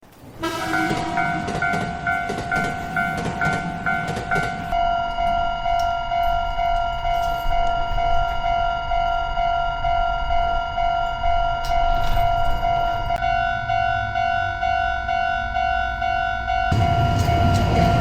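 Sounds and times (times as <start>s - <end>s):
train clattering past: 0.0s - 4.8s, 11.7s - 18.0s
electronic crossing warning bells: 0.1s - 18.0s.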